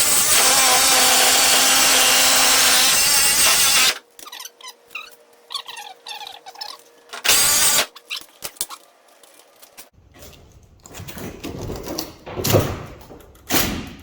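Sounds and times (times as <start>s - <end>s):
power tool cutting sheet metal: 0.0s - 4.0s, 7.2s - 7.9s.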